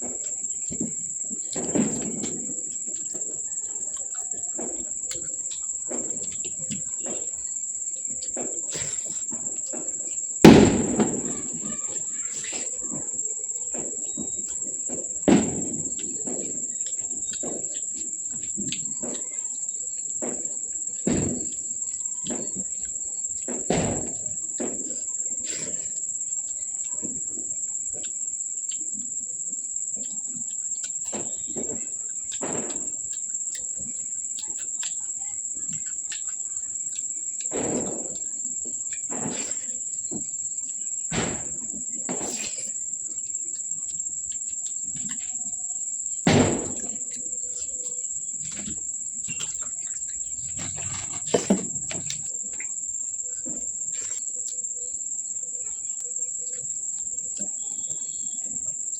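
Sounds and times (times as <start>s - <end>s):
cricket trilling: 0.0s - 58.9s
person chewing: 30.0s - 35.0s.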